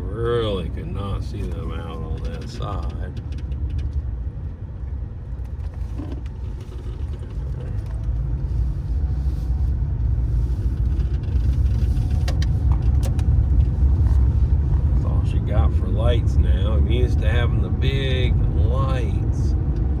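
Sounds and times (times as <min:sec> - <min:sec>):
car driving heard from cabin: 0:00.0 - 0:20.0.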